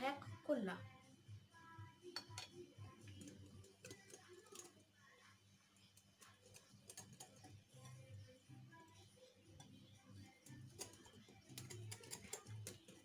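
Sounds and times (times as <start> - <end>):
utensil tapping against bowl: 6.0 - 8.0, 10.4 - 13.0.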